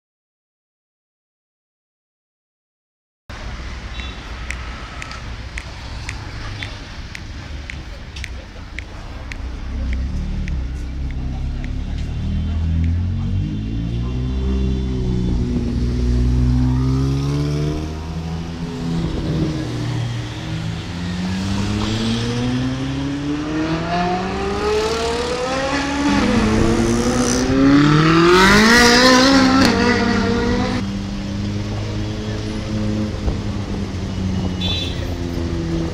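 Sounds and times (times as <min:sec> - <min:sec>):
car engine accelerating hard: 0:09.5 - 0:34.1.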